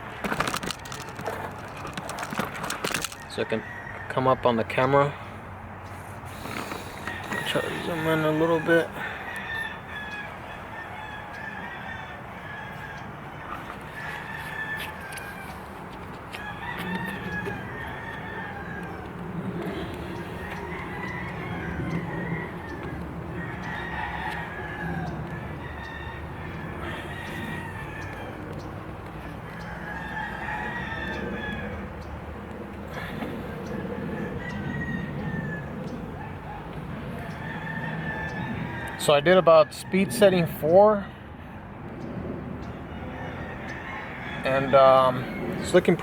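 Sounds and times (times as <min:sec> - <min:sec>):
roosters crowing: 0:00.0 - 0:46.0
steady low hum: 0:15.6 - 0:38.7.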